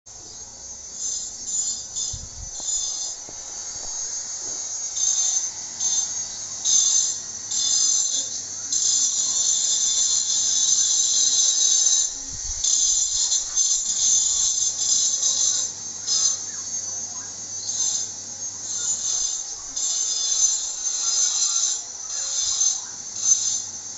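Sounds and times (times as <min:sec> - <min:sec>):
low motor hum: 0:00.1 - 0:06.6
high-pitched grinding: 0:00.1 - 0:23.9.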